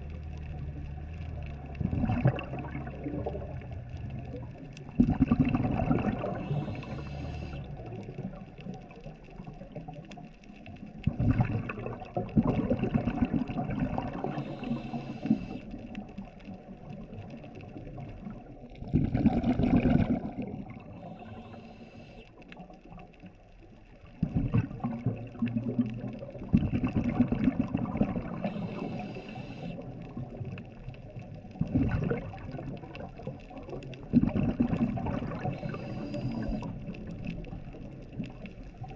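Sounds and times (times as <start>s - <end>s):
exhaled bubbles rumbling: 0.0s - 38.9s
regulator inhale hiss: 6.3s - 7.9s, 14.2s - 15.8s, 20.9s - 22.5s, 28.3s - 30.0s, 35.4s - 36.9s.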